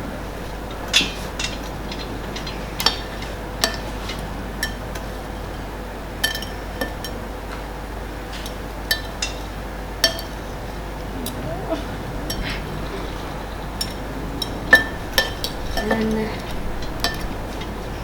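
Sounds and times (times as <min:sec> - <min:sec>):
spoon clinking against bowl: 0:10.0 - 0:10.4, 0:12.1 - 0:17.4.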